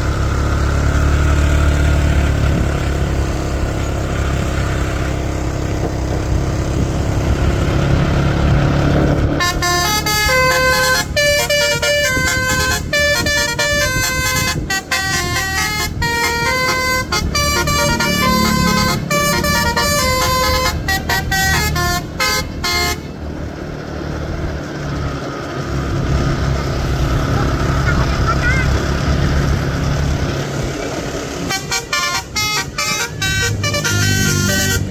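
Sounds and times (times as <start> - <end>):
low rumble of vehicle engines: 0.0 - 34.9
bus musical horn melody: 9.2 - 23.6, 31.3 - 34.9.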